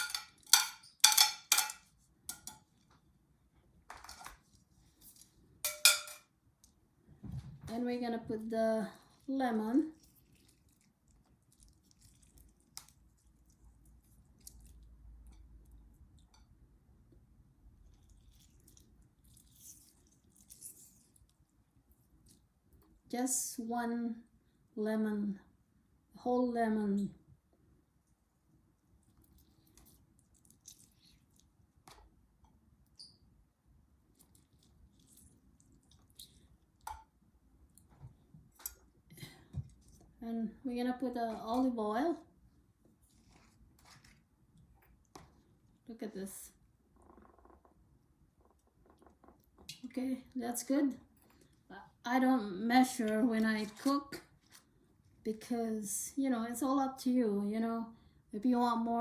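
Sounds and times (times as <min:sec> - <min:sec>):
wet squishing of lemon: 0:09.0 - 0:16.3, 0:17.6 - 0:23.0, 0:28.1 - 0:32.2, 0:34.0 - 0:39.0.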